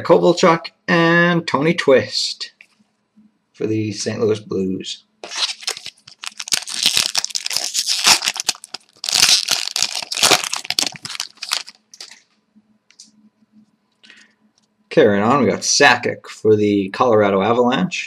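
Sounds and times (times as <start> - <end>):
cards being handled: 5.2 - 12.2
wrapper crinkling: 5.2 - 12.2.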